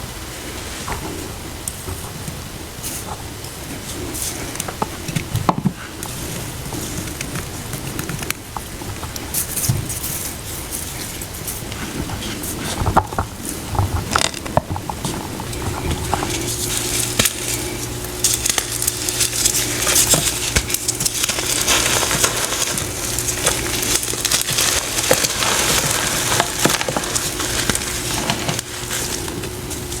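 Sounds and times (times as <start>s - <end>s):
faint steady hum: 0.0s - 30.0s
crunchy snacks crackling: 15.2s - 30.0s.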